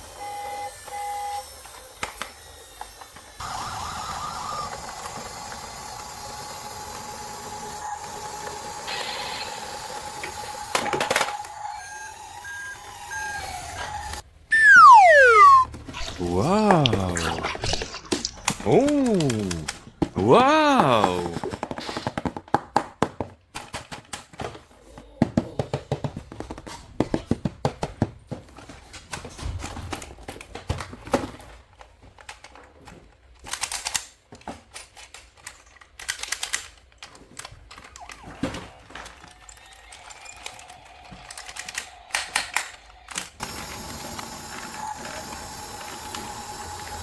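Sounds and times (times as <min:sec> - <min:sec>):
plastic toys clicking and rattling: 0:30.2 - 0:43.4.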